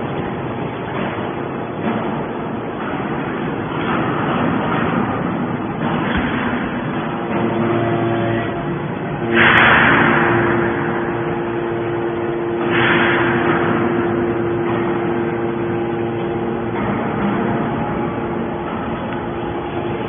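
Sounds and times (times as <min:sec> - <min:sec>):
hydraulic baler humming: 0:00.0 - 0:20.0
hydraulic rushing surges: 0:00.0 - 0:20.0.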